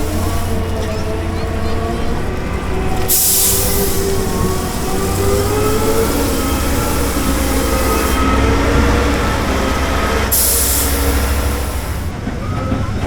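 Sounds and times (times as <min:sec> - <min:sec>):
air release hiss: 0:00.0 - 0:00.8, 0:02.9 - 0:12.1
diesel engine rumbling: 0:00.0 - 0:13.0.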